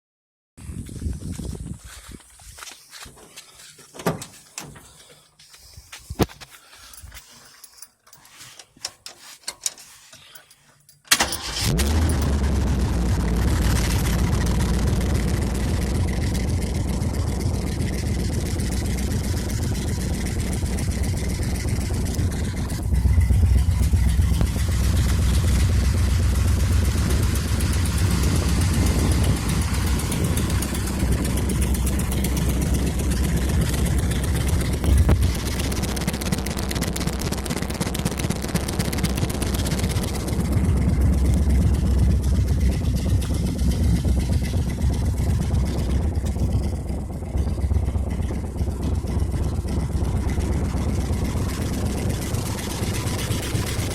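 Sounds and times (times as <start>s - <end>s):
exhaust leak: 11.1s - 53.9s
truck engine running: 11.1s - 53.9s.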